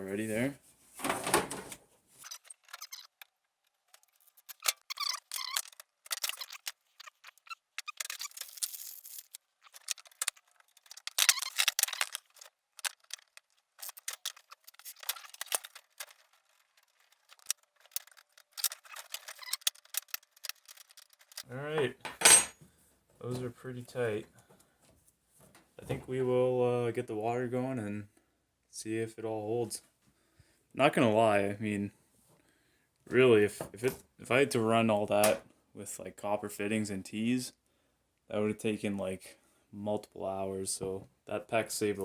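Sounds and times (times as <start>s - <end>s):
crimping tool clicks and creaks: 2.2s - 21.5s.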